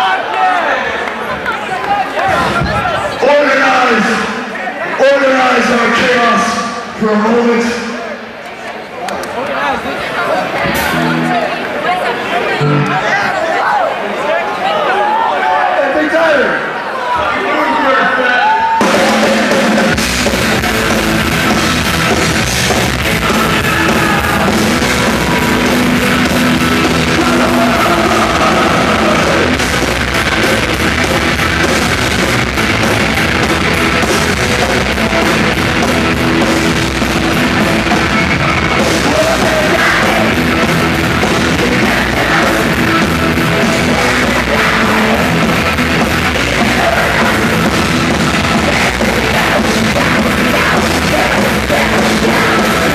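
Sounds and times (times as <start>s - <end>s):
stage talk: 0.0s - 52.9s
drum kit: 10.6s - 11.5s, 18.8s - 52.9s
live rock band playing: 10.6s - 13.4s, 18.8s - 52.9s.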